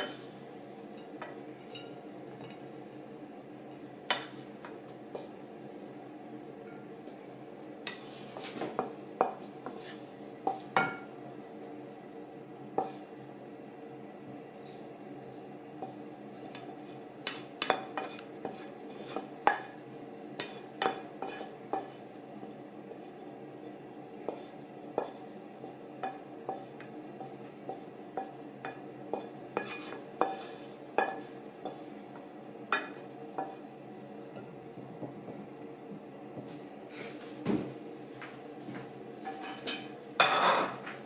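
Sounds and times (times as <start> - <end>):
cutlery clinking against dishes: 1.0 - 2.6, 6.6 - 6.9, 10.5 - 11.1, 39.2 - 40.9.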